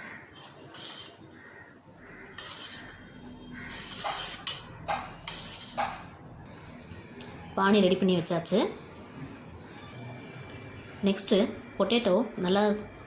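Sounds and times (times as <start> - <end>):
spoon stirring liquid in a bowl: 0.1 - 1.3, 2.0 - 6.2.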